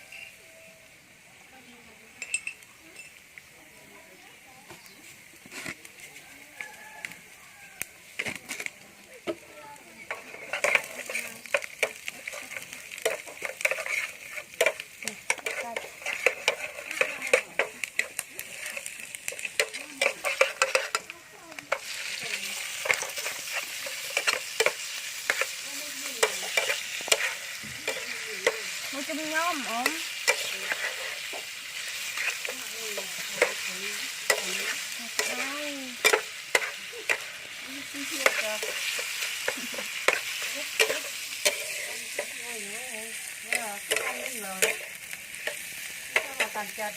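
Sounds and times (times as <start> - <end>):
food sizzling in a pan: 0.0 - 46.9
utensil clicking and scraping: 10.1 - 25.6, 26.2 - 28.7, 29.8 - 37.4.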